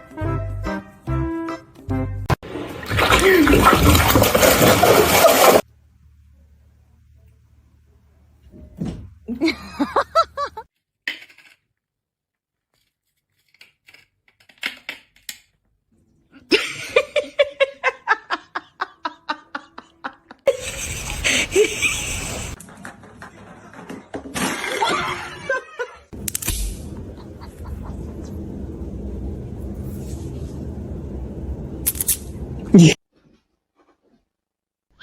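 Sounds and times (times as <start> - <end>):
person laughing in bursts: 4.7 - 5.6, 9.3 - 10.6, 16.5 - 22.6, 24.6 - 26.1, 27.0 - 28.5.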